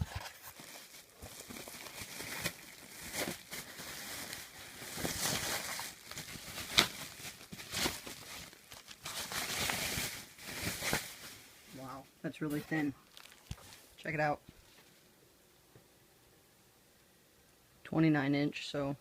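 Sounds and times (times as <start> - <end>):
packaging rustling and scraping: 0.0 - 11.5, 12.5 - 14.0.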